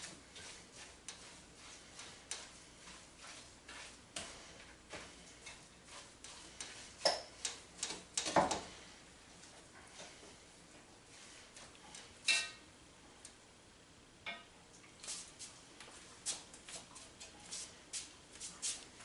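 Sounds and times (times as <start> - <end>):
utensil scrape: 0.0 - 8.0.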